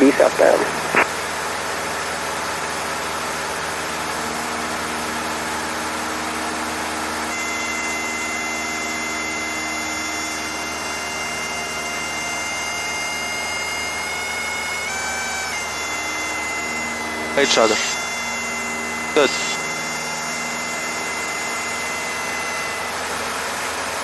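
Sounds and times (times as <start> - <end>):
light aircraft engine running: 0.0 - 24.0
stall warning horn tone: 6.0 - 13.5, 14.2 - 23.0.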